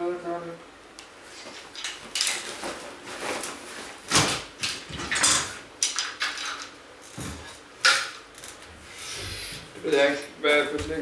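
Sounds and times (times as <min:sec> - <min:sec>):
clothes hangers clattering: 0:01.7 - 0:02.8.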